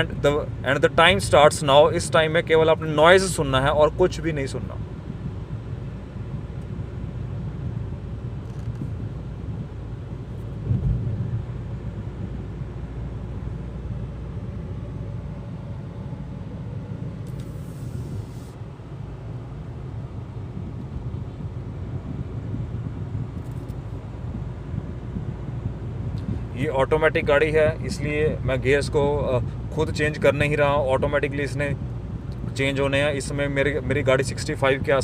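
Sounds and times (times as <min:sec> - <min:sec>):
car cabin road rumble: 0:00.0 - 0:35.0
brief high hiss: 0:17.3 - 0:18.6.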